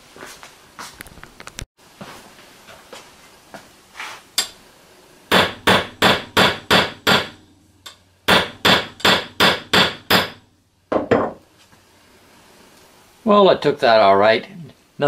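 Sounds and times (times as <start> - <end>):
hammer striking steel punch: 5.3 - 11.4.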